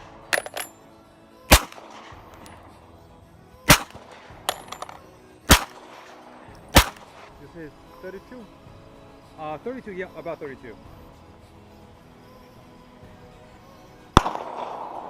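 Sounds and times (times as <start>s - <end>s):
sharp gunshots: 1.5s - 2.5s, 3.7s - 7.4s, 14.2s - 15.0s.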